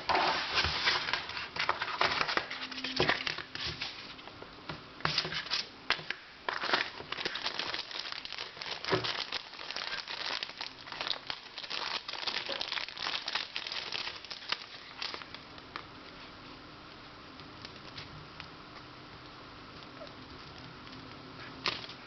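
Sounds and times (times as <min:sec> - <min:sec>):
packaging crinkling: 0:00.2 - 0:04.2, 0:05.1 - 0:15.8.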